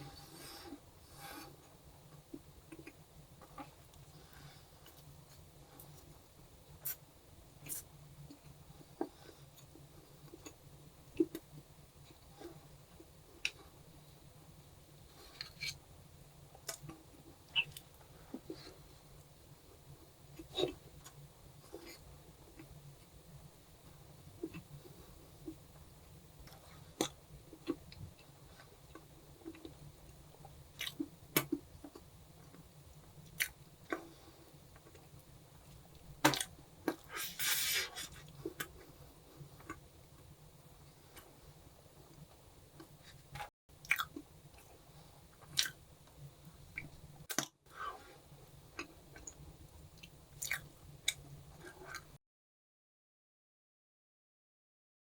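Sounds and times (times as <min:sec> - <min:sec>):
low steady hum: 0:00.0 - 0:52.2
person chewing and crunching food: 0:06.8 - 0:07.0, 0:26.4 - 0:40.3, 0:42.1 - 0:52.2.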